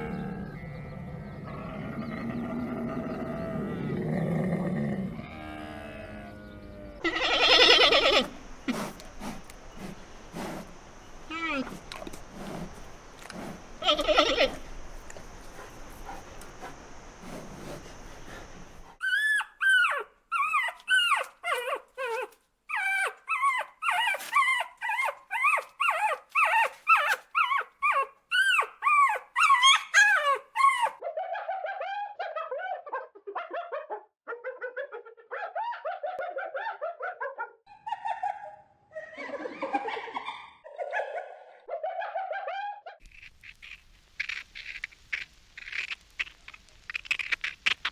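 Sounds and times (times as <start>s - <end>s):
lower rough dog calls: 7.0s - 31.0s
hiss: 7.1s - 19.0s
dog whimpering and yipping: 19.0s - 31.0s.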